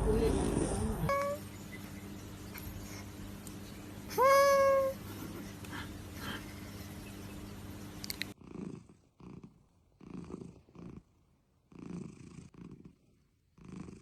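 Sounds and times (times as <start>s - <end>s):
steady hiss and hum: 0.0s - 8.4s
cat purring: 8.4s - 14.0s.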